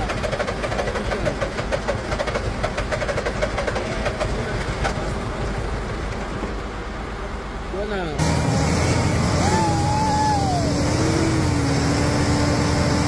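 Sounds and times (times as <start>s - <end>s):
diesel truck engine idling: 3.8s - 13.0s.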